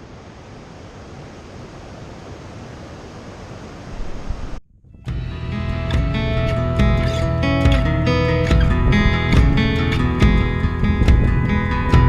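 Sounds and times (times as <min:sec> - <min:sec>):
steady rushing noise: 0:00.0 - 0:12.0
acoustic guitar music: 0:04.9 - 0:12.0.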